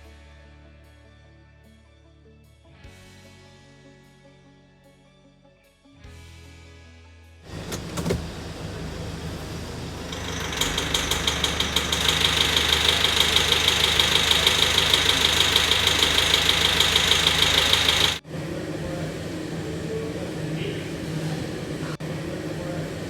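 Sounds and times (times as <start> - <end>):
van engine running: 7.5 - 18.2
rhythmic engine knock: 7.6 - 18.2.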